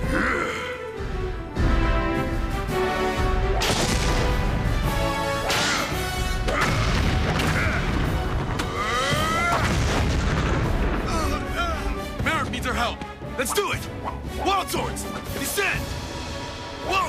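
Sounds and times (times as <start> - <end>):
dramatic background music: 0.0 - 17.0
heavy booms and crashes: 9.4 - 11.5.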